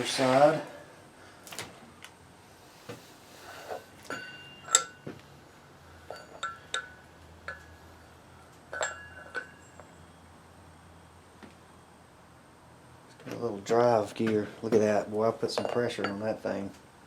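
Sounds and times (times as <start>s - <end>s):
metal parts clinking and knocking: 4.0s - 5.1s, 6.0s - 7.7s, 8.7s - 10.0s.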